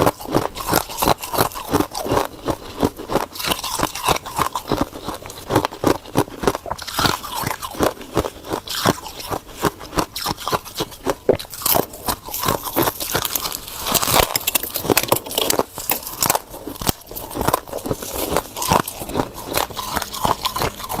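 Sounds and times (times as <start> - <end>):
frost being chewed with crunches: 0.0 - 21.0.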